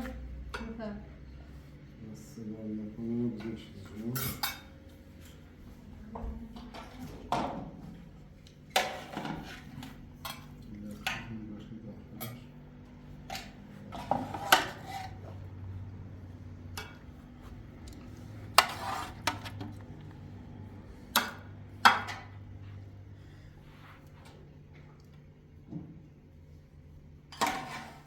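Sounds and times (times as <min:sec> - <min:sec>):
low machine hum: 0:00.0 - 0:28.0
metal scraping: 0:18.5 - 0:19.5.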